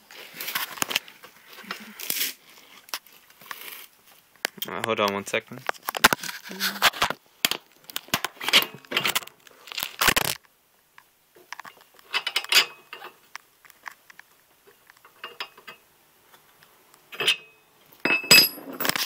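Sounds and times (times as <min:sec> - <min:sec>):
metal clinks and knocks: 0:17.2 - 0:19.0.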